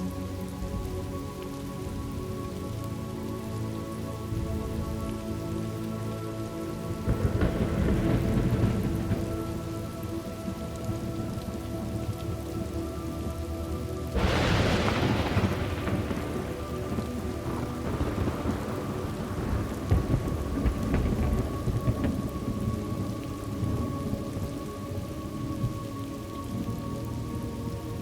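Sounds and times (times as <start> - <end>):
steady rain: 0.0 - 28.0
thunderclap rumbling: 6.7 - 28.0.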